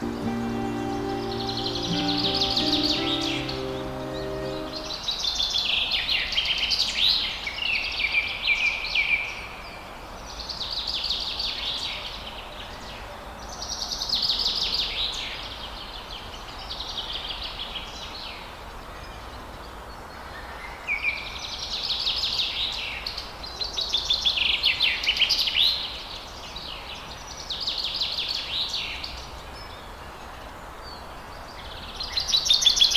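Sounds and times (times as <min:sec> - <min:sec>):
birds chirping: 0:00.0 - 0:05.0
rain hiss: 0:00.0 - 0:05.0
soft music: 0:00.0 - 0:05.0.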